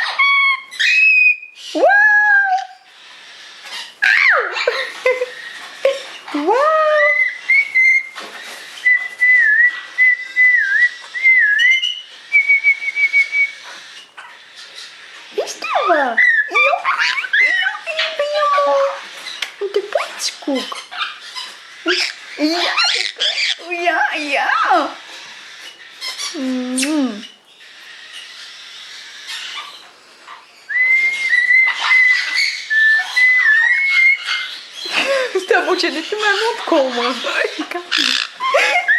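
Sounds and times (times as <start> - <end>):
parrot calls and clicks: 13.8 - 23.7.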